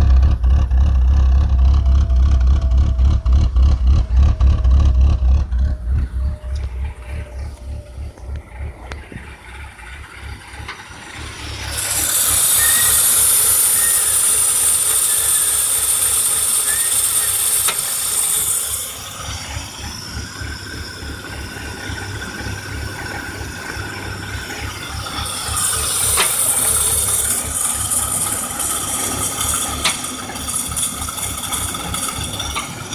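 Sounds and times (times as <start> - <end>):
car engine idling: 0.0 - 32.9
loud hiss: 10.1 - 23.1.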